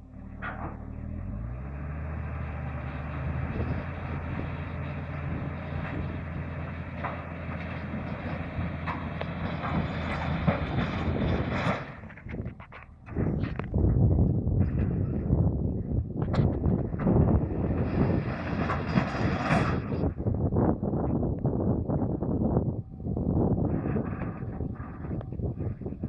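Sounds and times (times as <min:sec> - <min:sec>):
bulldozer diesel engine revving: 0:00.0 - 0:13.9, 0:16.9 - 0:20.0.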